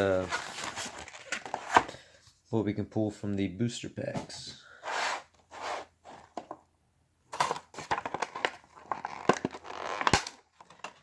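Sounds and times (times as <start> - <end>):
packaging rustling: 0.0 - 2.0.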